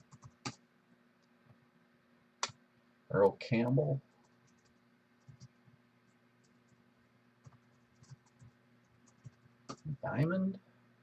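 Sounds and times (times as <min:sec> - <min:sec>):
typing on computer keyboard: 0:00.0 - 0:00.6, 0:07.4 - 0:09.9.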